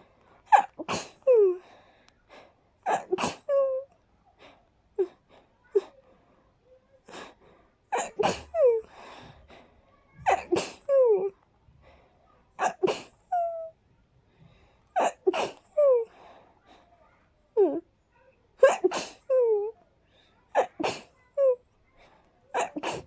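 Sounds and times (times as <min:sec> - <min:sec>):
soft breathing: 0:01.4 - 0:02.8, 0:04.2 - 0:07.9, 0:08.8 - 0:10.2, 0:11.3 - 0:12.5, 0:14.2 - 0:15.0, 0:15.6 - 0:17.4, 0:20.0 - 0:20.5, 0:21.8 - 0:23.0
person sneezing: 0:07.9 - 0:08.6, 0:10.3 - 0:10.9, 0:12.6 - 0:13.2, 0:15.0 - 0:15.7, 0:18.6 - 0:19.2, 0:20.6 - 0:21.2, 0:22.6 - 0:23.0.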